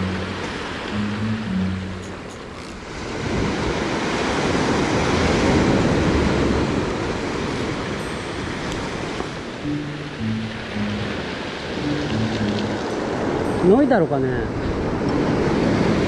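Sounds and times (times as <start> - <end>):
wave breaking on sandy beach: 2.9 - 9.5.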